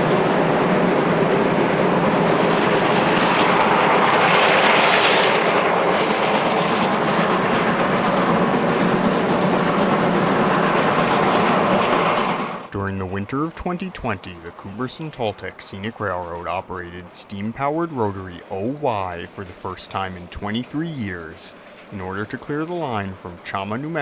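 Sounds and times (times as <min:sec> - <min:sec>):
steam train working: 0:00.0 - 0:24.0
steam hiss: 0:12.9 - 0:24.0.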